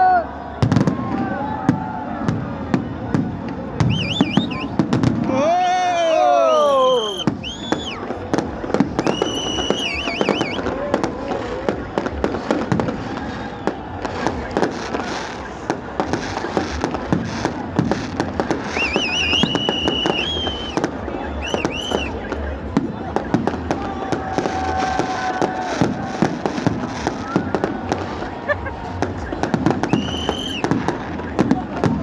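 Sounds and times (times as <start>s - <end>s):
crowd voices: 0.0s - 32.0s
fireworks bangs and crackles: 0.6s - 32.0s
high wavering whistle: 3.9s - 4.8s, 6.6s - 8.0s, 9.0s - 10.6s, 18.7s - 22.2s.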